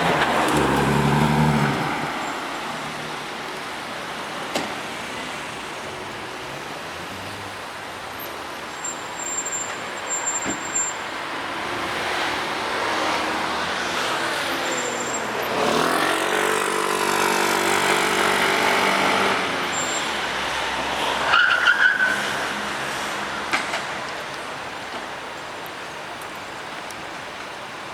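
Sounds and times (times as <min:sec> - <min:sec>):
car accelerating past: 0:00.0 - 0:03.0, 0:15.4 - 0:19.7
tyre squeal: 0:08.7 - 0:11.0, 0:14.5 - 0:15.5, 0:19.7 - 0:20.2.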